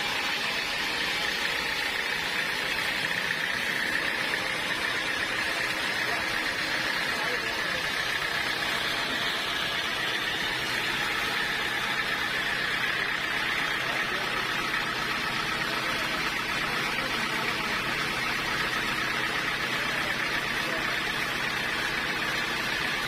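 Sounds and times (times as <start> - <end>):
sawmill machinery hum and hiss: 0.0 - 23.0.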